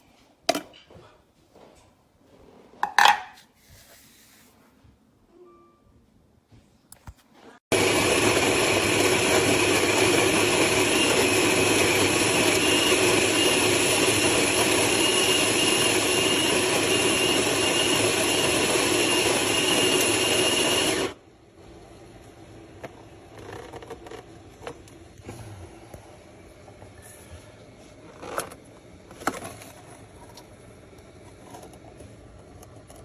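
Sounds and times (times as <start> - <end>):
electric coffee grinder running: 7.7 - 21.2.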